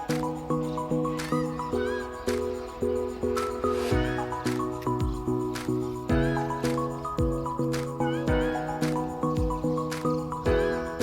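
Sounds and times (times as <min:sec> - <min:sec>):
steady thumping beat: 0:03.9 - 0:11.0.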